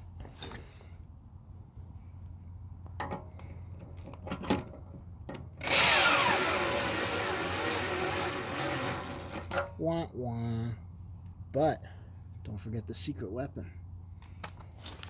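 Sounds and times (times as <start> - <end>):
cordless drill driving bolt into wood: 5.6 - 9.7.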